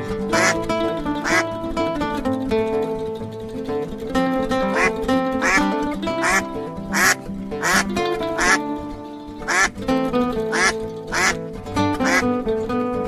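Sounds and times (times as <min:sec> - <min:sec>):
background music: 0:00.0 - 0:13.0
ducks quacking: 0:00.3 - 0:01.4, 0:04.7 - 0:08.6, 0:09.4 - 0:09.8, 0:10.5 - 0:11.4, 0:12.0 - 0:12.3.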